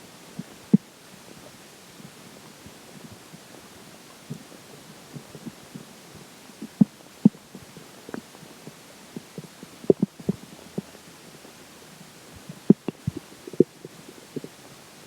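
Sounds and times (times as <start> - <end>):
stomach gurgling: 6.6 - 11.6, 12.4 - 14.7.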